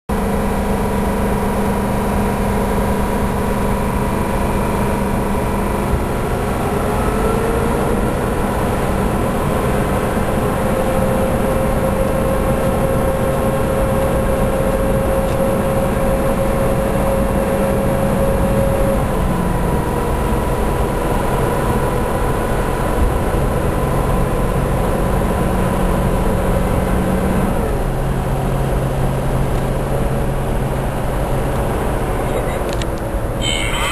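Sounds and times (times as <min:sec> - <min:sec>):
diesel truck engine running: 0:00.1 - 0:33.9
thin whistle: 0:33.4 - 0:33.9.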